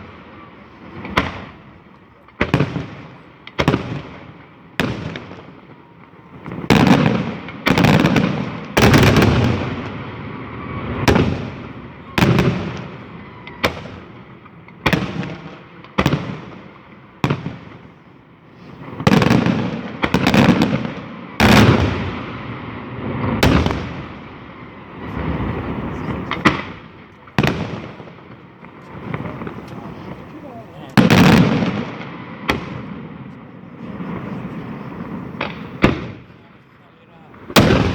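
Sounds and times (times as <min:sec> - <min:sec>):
fireworks bangs: 0:00.0 - 0:37.9
rumbling echo: 0:21.5 - 0:36.2, 0:37.4 - 0:37.9.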